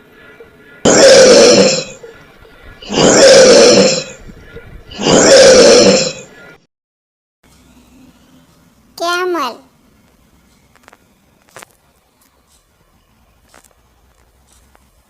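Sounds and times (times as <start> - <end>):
bear growling: 0.8 - 2.1, 2.8 - 4.2, 4.9 - 6.3.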